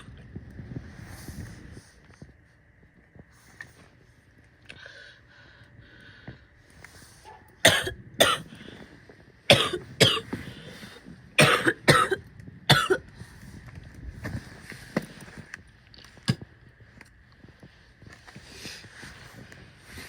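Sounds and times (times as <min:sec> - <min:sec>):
woman coughing: 0:07.6 - 0:08.5, 0:09.5 - 0:10.4, 0:11.4 - 0:13.0.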